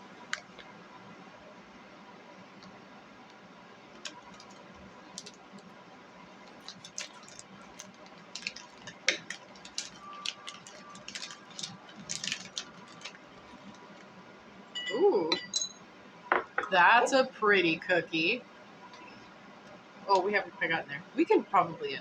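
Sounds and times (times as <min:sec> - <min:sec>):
snack wrapper crinkling: 0:04.0 - 0:05.7, 0:06.5 - 0:14.1.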